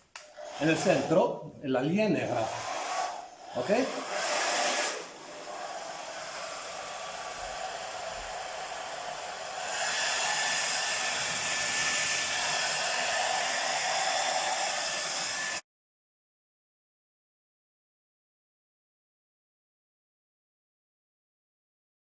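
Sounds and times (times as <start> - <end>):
hair dryer blowing: 0.0 - 1.4, 2.1 - 15.6.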